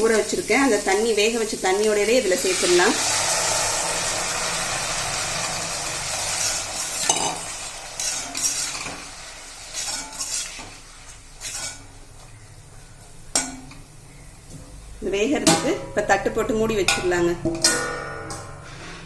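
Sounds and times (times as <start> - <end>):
beans sizzling in a pan: 0.0 - 15.4
spoon scraping a metal pan: 6.3 - 12.0.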